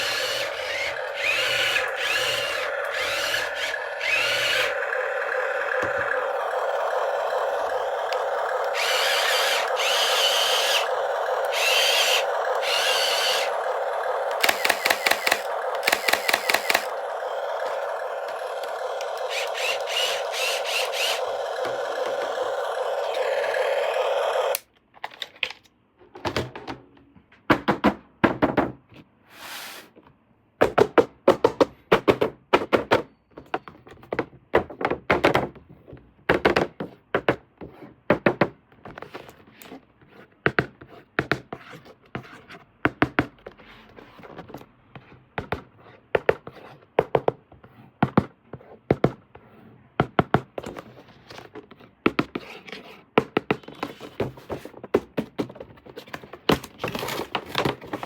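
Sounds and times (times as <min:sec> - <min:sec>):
plastic toy parts clicking: 0:05.6 - 0:25.8
short scrape: 0:29.3 - 0:29.9.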